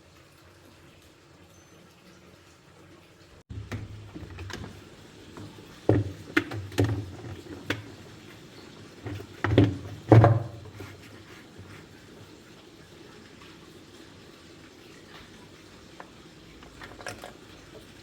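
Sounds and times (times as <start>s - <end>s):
sharp knocks and clunks: 3.5s - 8.1s, 9.0s - 11.0s.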